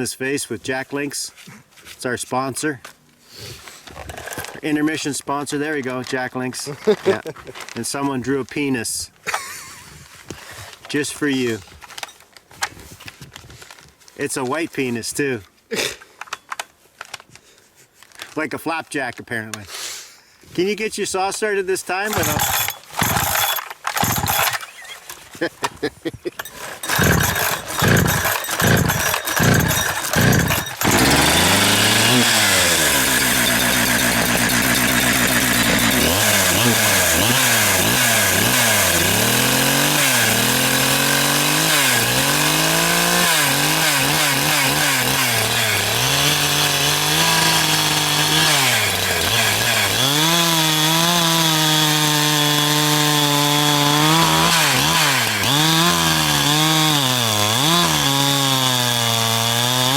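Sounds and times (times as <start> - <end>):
chainsaw starting and revving: 22.0 - 25.0, 26.4 - 59.9
chainsaw cutting log: 22.0 - 25.1, 26.4 - 59.9.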